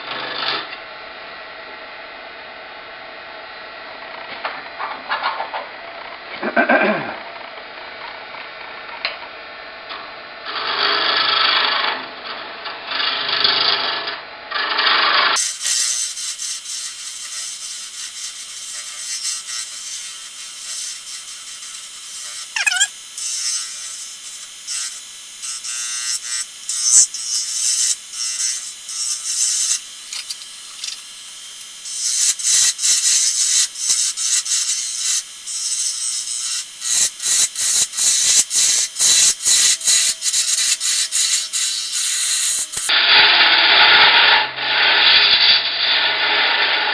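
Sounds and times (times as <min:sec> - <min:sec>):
lathe tool scraping antler: 0:15.4 - 0:42.9
repeated scraping strokes: 0:15.4 - 0:42.9.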